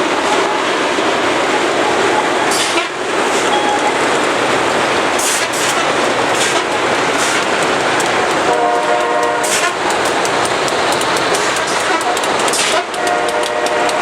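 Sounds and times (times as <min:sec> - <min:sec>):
train grinding rail: 0:00.0 - 0:14.0
train horn: 0:02.5 - 0:03.0, 0:08.4 - 0:09.9, 0:11.7 - 0:14.0.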